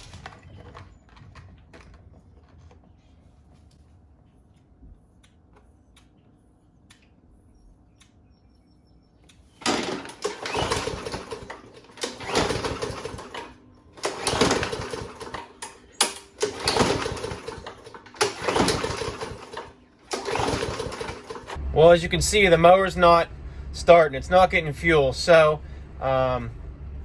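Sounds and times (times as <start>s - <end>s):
mower engine cranking: 0.0s - 2.6s, 9.6s - 21.6s.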